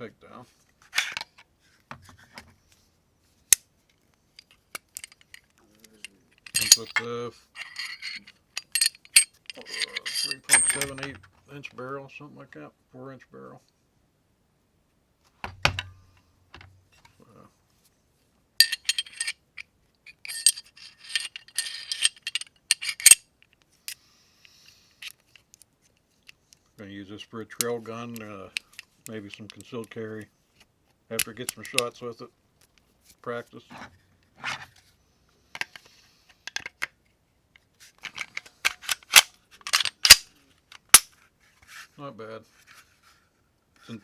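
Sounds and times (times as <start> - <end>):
pistol parts clicking and scraping: 0.8 - 1.4, 4.4 - 11.2, 18.6 - 24.0, 25.0 - 26.8, 27.5 - 31.9, 35.6 - 37.0, 37.8 - 41.2
pistol mechanical clicks: 38.7 - 40.3.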